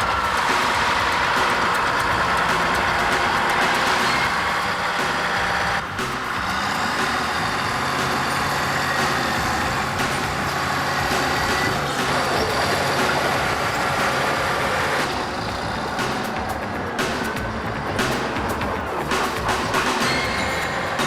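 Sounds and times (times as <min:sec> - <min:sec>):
diesel engine running: 0:00.0 - 0:21.0.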